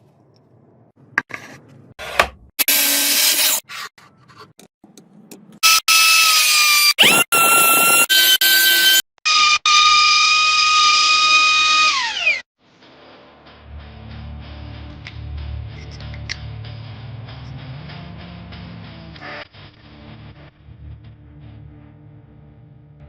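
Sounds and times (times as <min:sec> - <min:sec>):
router cutting wood: 0:02.2 - 0:03.6, 0:05.6 - 0:12.4
electric wood router whining: 0:05.6 - 0:12.4.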